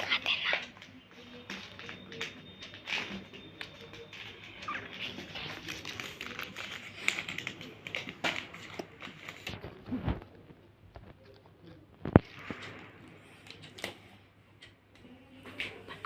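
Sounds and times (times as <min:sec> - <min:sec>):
paper crackling: 0:00.1 - 0:11.3.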